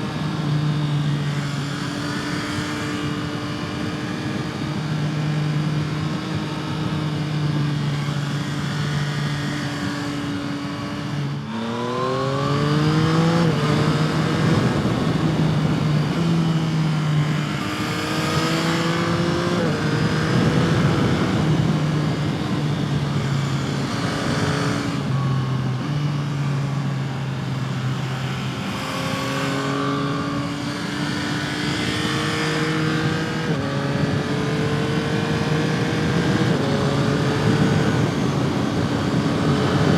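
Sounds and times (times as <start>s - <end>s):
motorcycle engine revving: 0.0s - 39.9s
wind rush: 12.4s - 26.0s, 31.6s - 39.9s.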